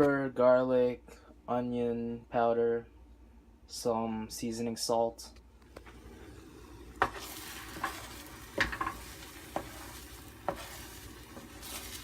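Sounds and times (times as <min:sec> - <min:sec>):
eggs sizzling in frying pan: 0:05.8 - 0:12.0
utensil scraping pan: 0:07.0 - 0:12.0.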